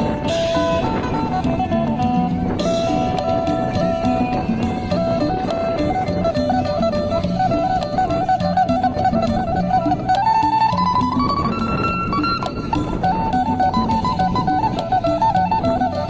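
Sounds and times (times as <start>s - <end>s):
light percussion: 0.0s - 16.0s
plucked-string melody: 0.0s - 16.0s.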